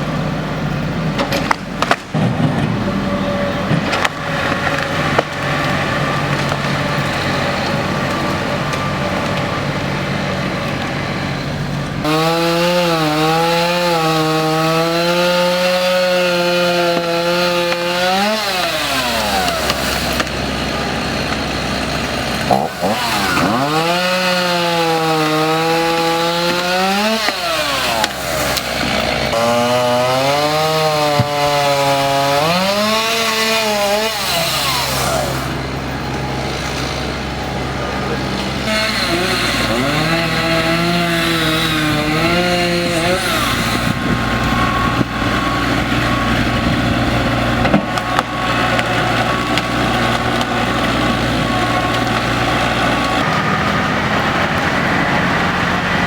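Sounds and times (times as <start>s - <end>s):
chainsaw revving and cutting: 12.0s - 56.0s.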